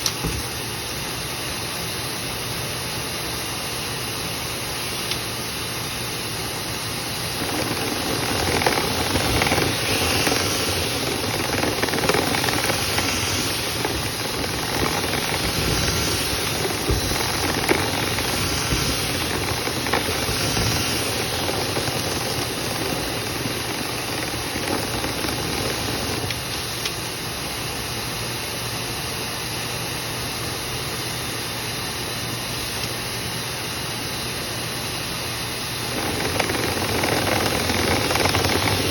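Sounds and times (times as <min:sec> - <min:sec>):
vent cleaning machine hissing: 0:00.0 - 0:28.8, 0:35.4 - 0:38.9
debris rattling through duct: 0:06.8 - 0:27.1, 0:35.7 - 0:38.9.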